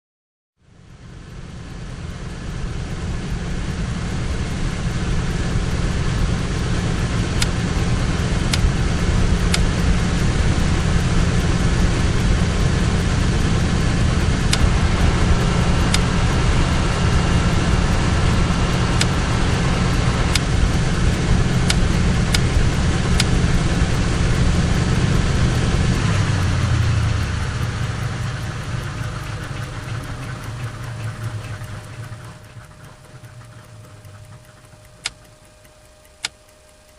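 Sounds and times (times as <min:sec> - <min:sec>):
aircraft cabin engine drone: 0:00.6 - 0:36.9
faint clicks: 0:09.4 - 0:10.0, 0:27.2 - 0:36.9.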